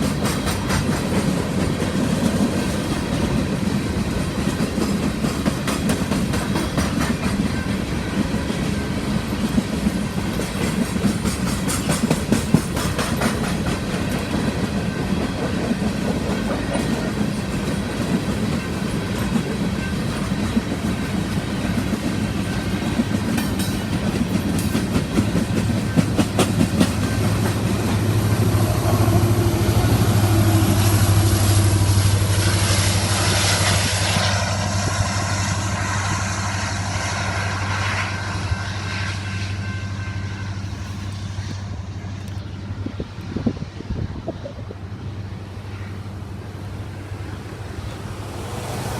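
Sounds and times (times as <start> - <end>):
wheels clicking over rail joints: 0.0 - 28.4
train cars rolling past: 0.0 - 48.9.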